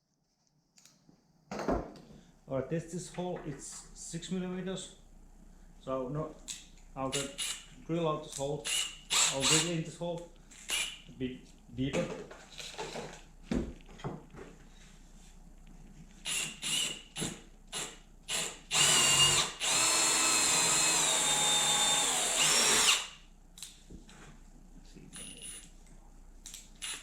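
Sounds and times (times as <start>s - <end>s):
power drill boring into wood: 8.7s - 9.8s, 16.3s - 17.0s, 17.7s - 23.2s.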